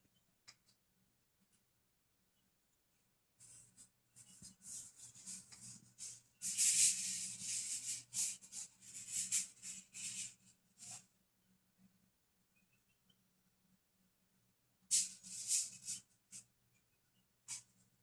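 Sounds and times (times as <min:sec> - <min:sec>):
rustling and scratching: 0:03.4 - 0:11.0.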